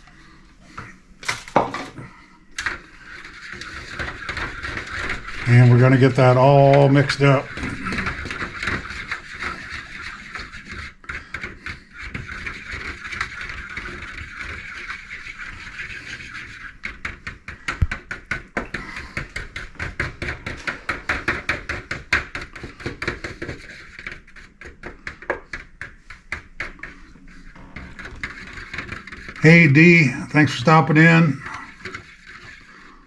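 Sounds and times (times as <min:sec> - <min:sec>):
whisk clicking against bowl: 0:02.6 - 0:27.0, 0:27.9 - 0:29.4
whisk swishing batter: 0:02.6 - 0:33.0.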